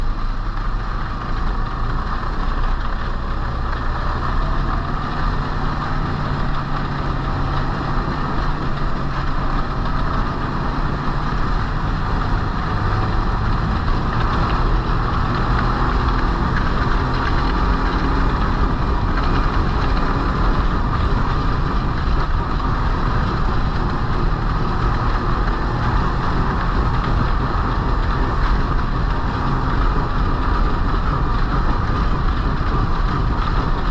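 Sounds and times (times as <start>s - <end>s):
snowmobile engine droning: 0.0s - 33.9s.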